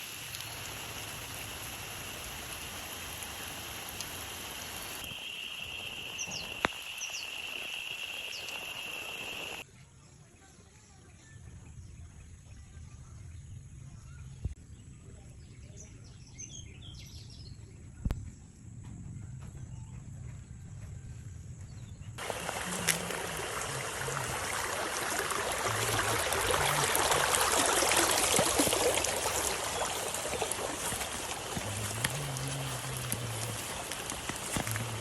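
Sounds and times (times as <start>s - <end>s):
background hiss: 0.0s - 9.6s, 22.2s - 35.0s
bird chirps: 5.2s - 9.6s.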